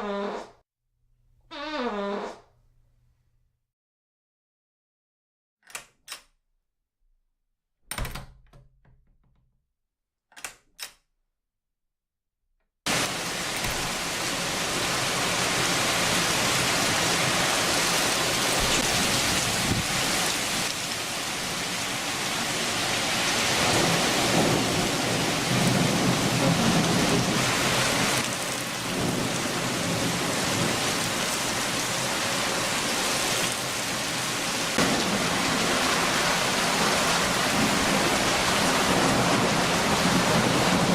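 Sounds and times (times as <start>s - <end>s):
heavy rain downpour: 12.9s - 40.9s
thunder rumbling: 23.5s - 28.2s, 34.8s - 40.9s.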